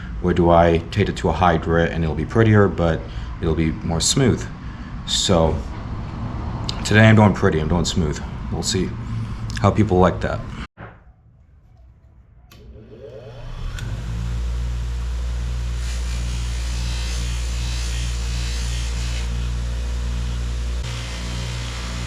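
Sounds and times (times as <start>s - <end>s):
power sander humming: 12.6s - 22.0s.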